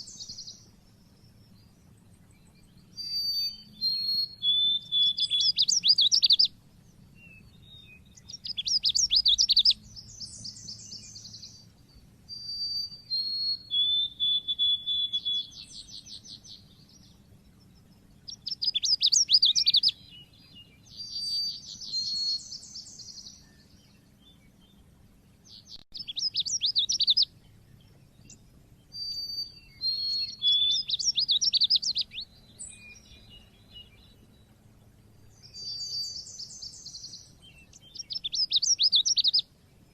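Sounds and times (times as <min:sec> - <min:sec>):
bird singing rapid chirps: 0:00.0 - 0:39.9.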